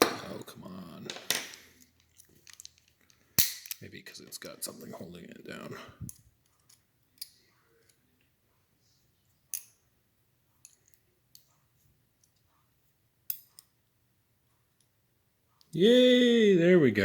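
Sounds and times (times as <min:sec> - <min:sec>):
metal wrench clicking inside padlock: 0:03.4 - 0:03.8.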